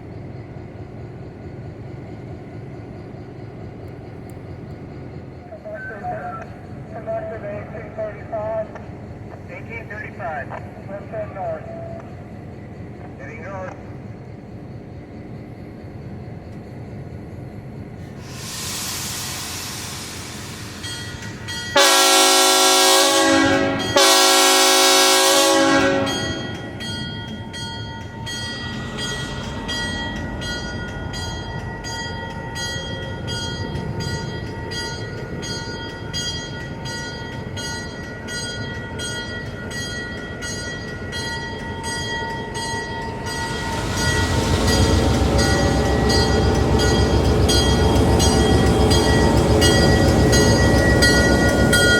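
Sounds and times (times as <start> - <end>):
train rumbling: 0.0 - 51.9
air hissing: 18.0 - 21.5, 42.8 - 48.1
train horn blasts: 21.7 - 26.7.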